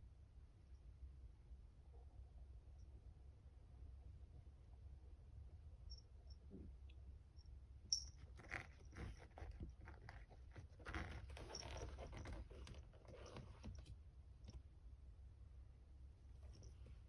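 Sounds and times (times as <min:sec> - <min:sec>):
cat chewing and crunching: 0:08.2 - 0:13.6.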